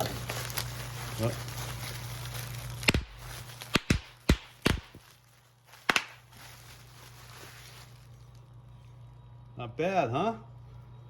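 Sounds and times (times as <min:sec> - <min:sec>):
package knocks and thuds: 0:02.8 - 0:05.1, 0:05.8 - 0:06.2.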